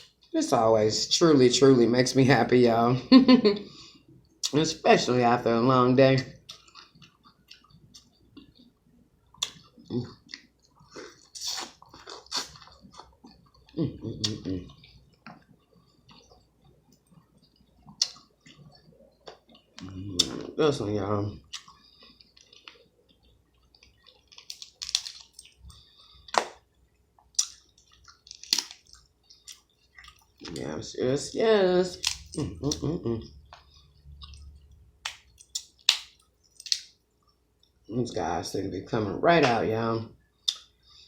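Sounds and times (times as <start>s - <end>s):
wet chewing: 6.2s - 20.7s, 21.4s - 30.8s, 31.8s - 37.9s
shells cracking: 24.4s - 25.4s, 35.0s - 36.9s
wet clicks of shells picked apart: 35.0s - 36.9s.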